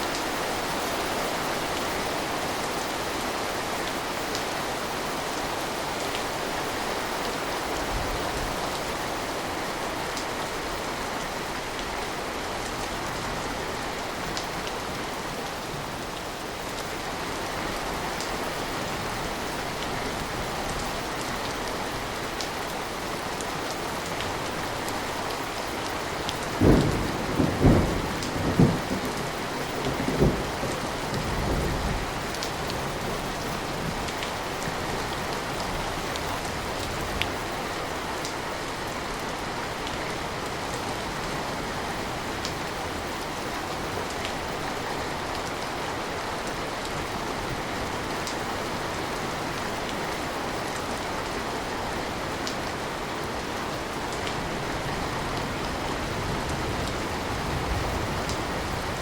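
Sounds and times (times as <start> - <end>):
steady rain falling: 0.0 - 59.0
thunder cracking and rumbling: 26.5 - 34.1.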